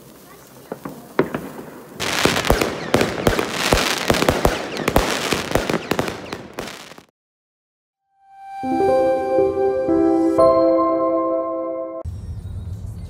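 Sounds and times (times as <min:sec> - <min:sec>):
fireworks bangs and crackling: 0:00.0 - 0:07.1.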